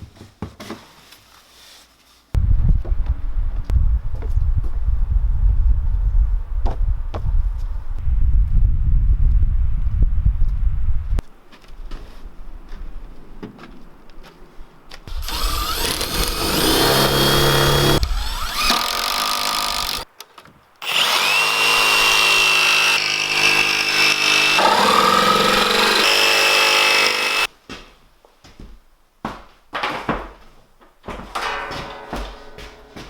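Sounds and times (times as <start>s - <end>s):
blender motor grinding nuts: 15.1s - 20.0s, 20.8s - 27.5s.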